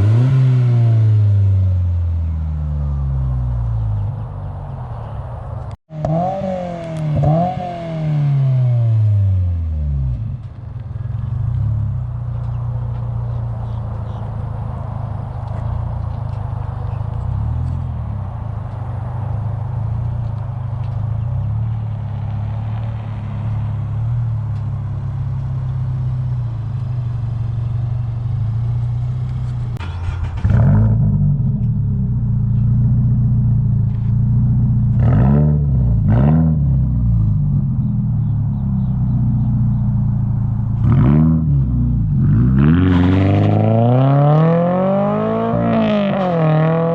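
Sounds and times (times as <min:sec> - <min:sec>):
car engine revving: 0:00.0 - 0:46.9.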